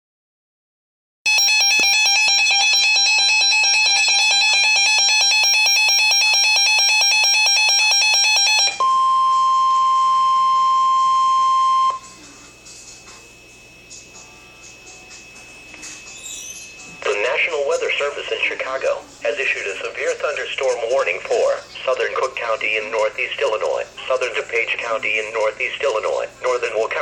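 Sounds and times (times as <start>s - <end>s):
electronic alarm tone pulsing: 1.3s - 12.2s, 13.3s - 17.7s.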